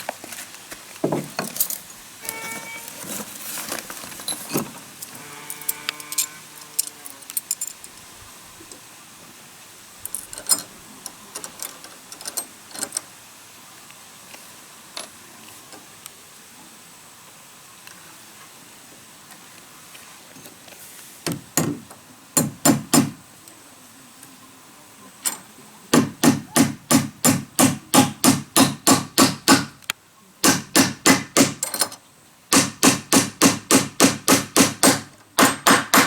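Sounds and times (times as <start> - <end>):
pitched creak: 5.1 - 7.2.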